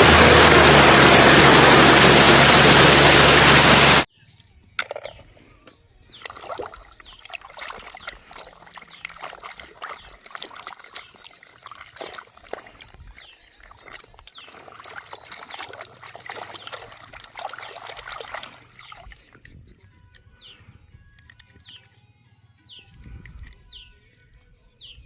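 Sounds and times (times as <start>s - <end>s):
water splashing and trickling: 6.0s - 20.2s
water drips and plops: 6.2s - 19.6s.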